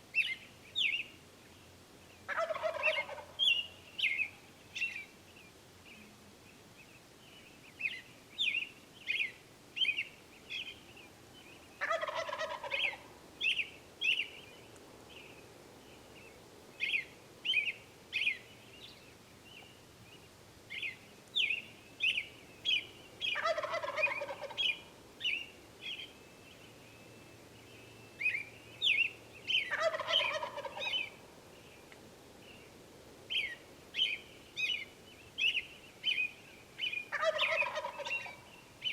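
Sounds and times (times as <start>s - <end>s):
turkey gobbling: 2.3s - 3.4s, 11.8s - 13.0s, 23.3s - 24.8s, 29.6s - 31.2s, 37.1s - 38.4s
short high turkey calls: 2.3s - 5.0s, 11.8s - 14.2s, 21.5s - 25.4s, 28.2s - 31.2s, 36.9s - 38.5s.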